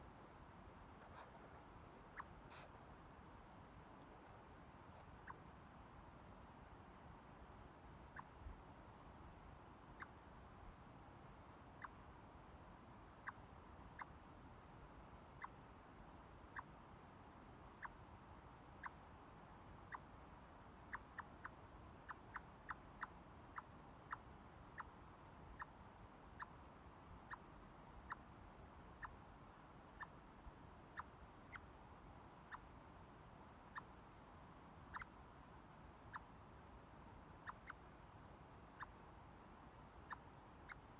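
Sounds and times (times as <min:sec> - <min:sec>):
chipmunk chip calls: 0:02.1 - 0:02.8, 0:05.0 - 0:05.4, 0:08.1 - 0:08.5, 0:10.0 - 0:10.2, 0:11.8 - 0:12.0, 0:13.2 - 0:14.2, 0:15.4 - 0:16.7, 0:17.7 - 0:18.1, 0:19.8 - 0:20.1, 0:20.7 - 0:29.2, 0:29.9 - 0:31.8, 0:32.4 - 0:32.8, 0:33.6 - 0:34.2, 0:34.8 - 0:40.9.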